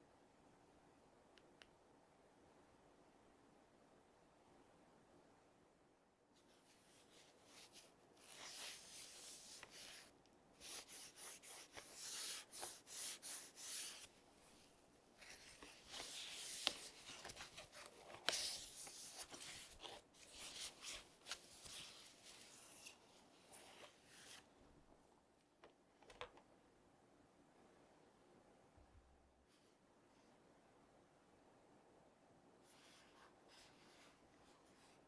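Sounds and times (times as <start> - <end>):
hands rustling packaging: 7.7 - 24.5.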